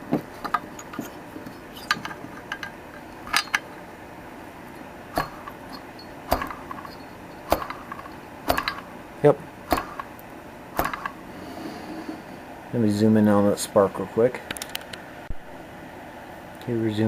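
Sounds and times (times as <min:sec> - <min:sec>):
sharp metallic clicks: 0:05.2 - 0:08.9, 0:09.6 - 0:10.2, 0:10.8 - 0:11.2.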